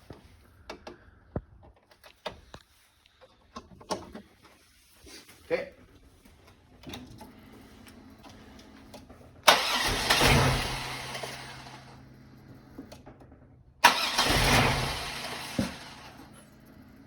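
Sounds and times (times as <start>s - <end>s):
car engine starting: 6.7s - 17.0s.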